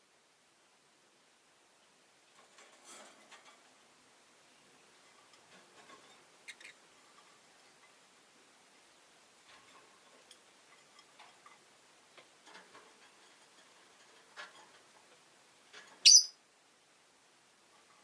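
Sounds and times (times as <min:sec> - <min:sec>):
bird chirp: 0:06.4 - 0:06.8, 0:16.0 - 0:16.4.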